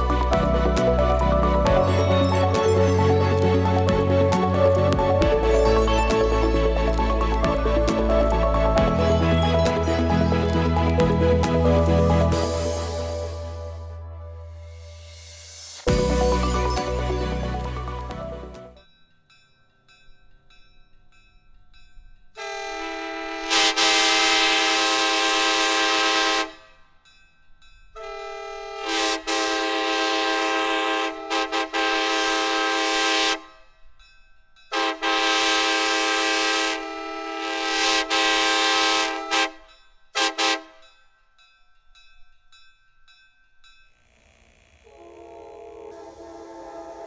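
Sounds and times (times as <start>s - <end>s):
locomotive air horn blasts: 22.4s - 26.7s, 28.0s - 33.6s, 34.7s - 39.6s, 40.2s - 40.8s, 44.8s - 47.0s.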